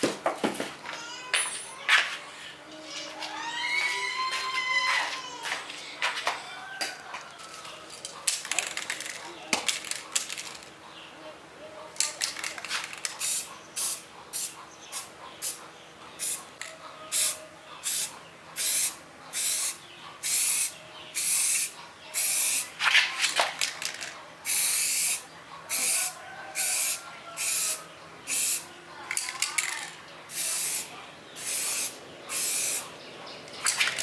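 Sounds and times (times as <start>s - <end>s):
spraying hiss bursts: 17.1s - 22.7s, 24.5s - 28.6s, 30.3s - 32.9s.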